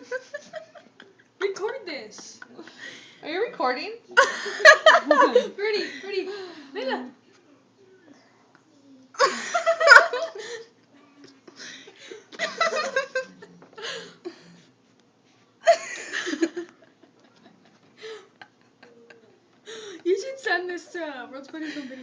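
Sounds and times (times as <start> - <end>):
people laughing: 4.2 - 7.0, 9.2 - 10.7, 11.5 - 14.1, 15.7 - 20.5, 21.3 - 22.0.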